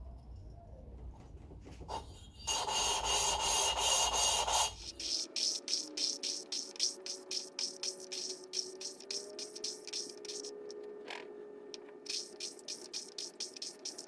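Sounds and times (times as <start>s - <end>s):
rasping rub: 1.9s - 10.7s
music with steady beat: 4.8s - 10.8s, 11.8s - 14.0s.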